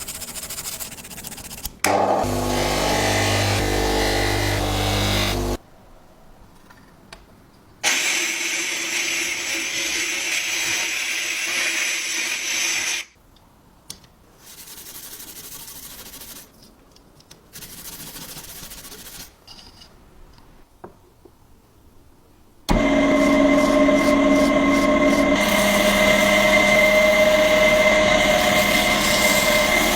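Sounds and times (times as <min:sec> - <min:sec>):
power tool sanding metal: 0:01.9 - 0:05.6, 0:22.7 - 0:29.9.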